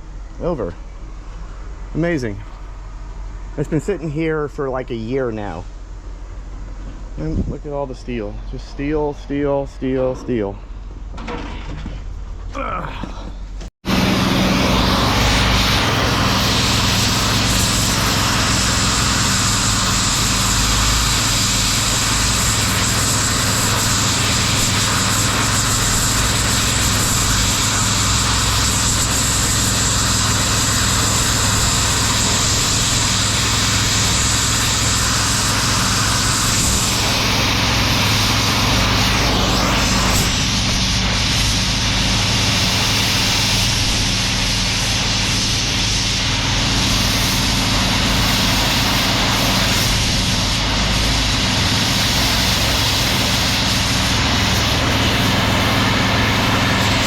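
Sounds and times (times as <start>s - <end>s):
machine engine running loudly: 13.8s - 57.0s.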